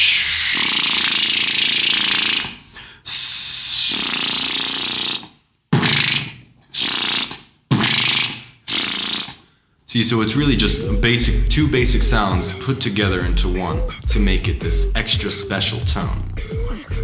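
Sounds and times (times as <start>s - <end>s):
beatboxed lip bass: 3.1s - 5.4s, 10.2s - 17.0s.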